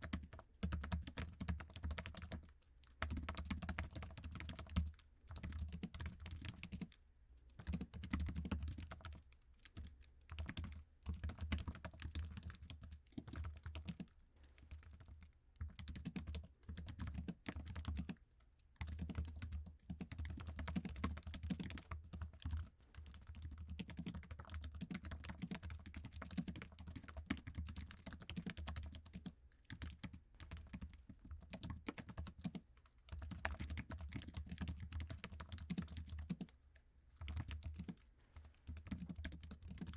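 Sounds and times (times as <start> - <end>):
keyboard typing clicks: 0.0 - 6.9, 7.5 - 14.1, 18.8 - 36.6, 37.2 - 39.9.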